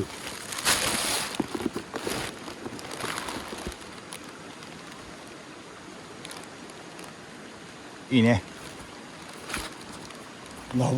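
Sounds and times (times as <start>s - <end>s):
tent packing rustling: 0.0s - 5.3s, 8.4s - 10.9s
faint steady hiss: 0.0s - 10.9s.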